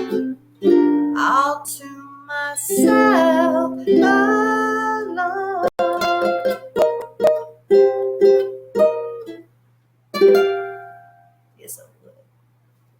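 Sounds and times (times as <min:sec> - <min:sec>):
strummed ukulele chords: 0:00.0 - 0:11.3.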